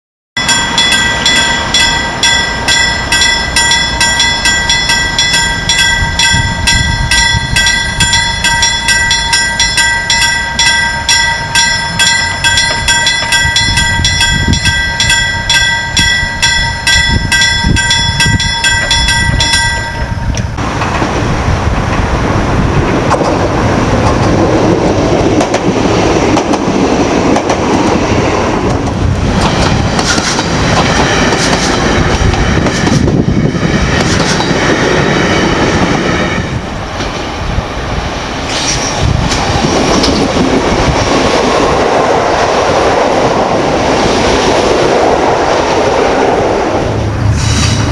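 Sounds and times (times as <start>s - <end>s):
railway crossing bell clanging: 0.4s - 21.0s
train rumbling: 0.4s - 47.9s.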